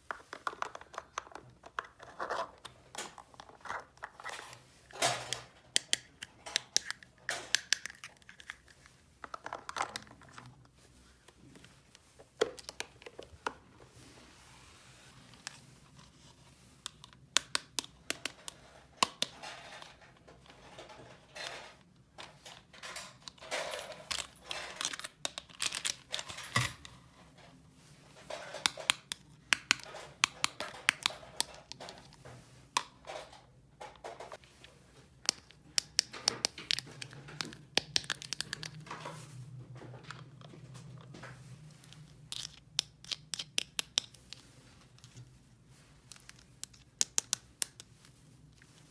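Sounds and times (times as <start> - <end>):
hands crinkling and tearing material: 40.4 - 48.9.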